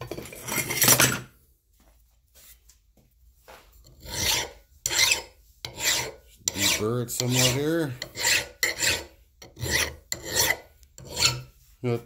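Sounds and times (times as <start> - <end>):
hand file rasping on metal: 3.9 - 11.6.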